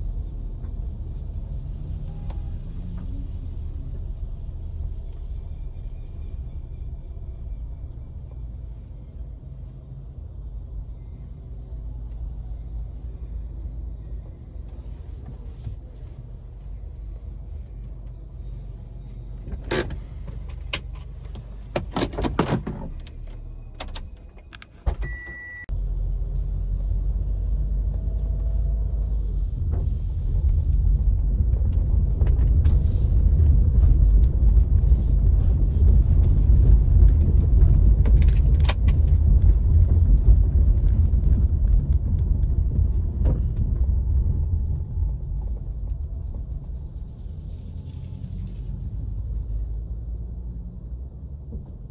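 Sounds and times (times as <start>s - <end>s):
car driving rumble: 0.0s - 51.9s.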